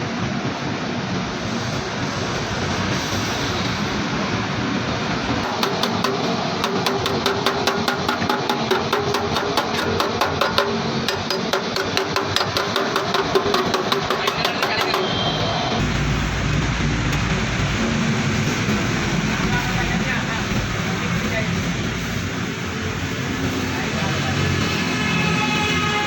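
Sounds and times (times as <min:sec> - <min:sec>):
steady background din: 0:03.4 - 0:26.0
hammer tapping on metal: 0:05.4 - 0:15.6.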